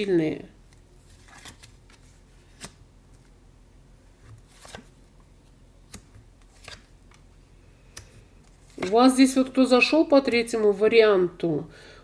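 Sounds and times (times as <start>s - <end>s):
cards slapping and rustling: 1.0s - 3.3s, 4.2s - 5.0s, 5.8s - 7.2s.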